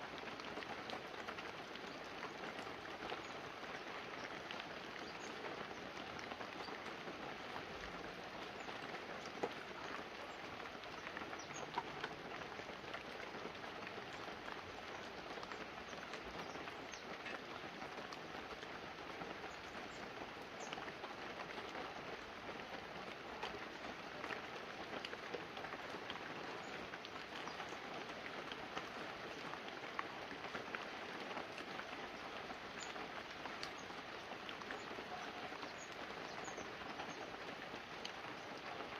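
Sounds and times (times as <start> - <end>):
rain pattering on leaves and roof: 0.0 - 38.9
water drips: 0.1 - 38.9.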